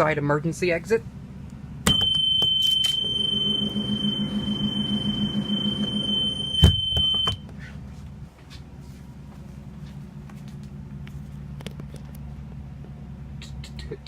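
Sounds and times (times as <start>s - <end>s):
door alarm buzzer: 1.8s - 7.4s.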